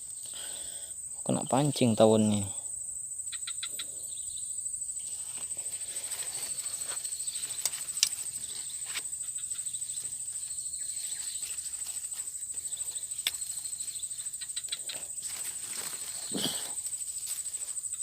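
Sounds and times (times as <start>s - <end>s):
insects trilling: 0.0s - 18.0s
sharp clicks: 7.6s - 8.2s.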